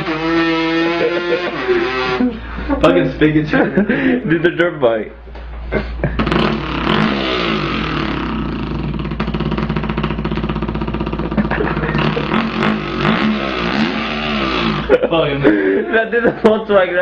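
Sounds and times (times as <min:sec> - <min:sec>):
man imitating dirt bike engine: 0:00.0 - 0:03.1, 0:06.0 - 0:16.0.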